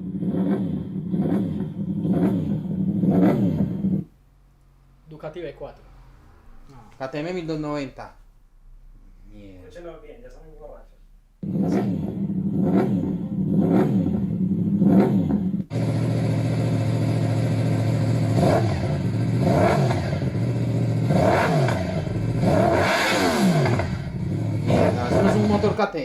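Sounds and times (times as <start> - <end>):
motorcycle engine revving: 0.0 - 4.2, 11.4 - 26.0.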